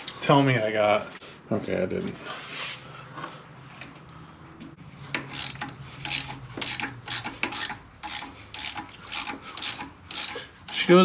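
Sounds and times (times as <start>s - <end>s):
ratchet wrench raspy strokes: 5.3s - 11.0s.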